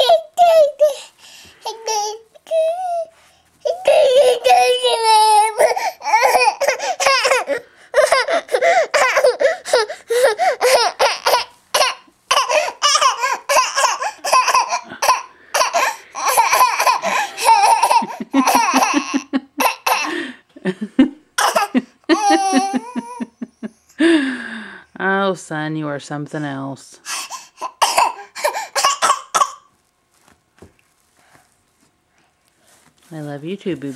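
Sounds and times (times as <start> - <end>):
baby laughing: 0.0 - 20.2, 21.4 - 23.3.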